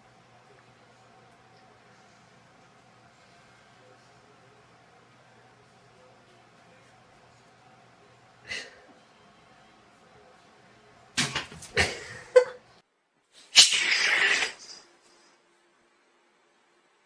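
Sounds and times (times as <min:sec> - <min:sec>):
cat sounds: 0:13.4 - 0:14.9
loud harsh cat noise: 0:13.4 - 0:14.9.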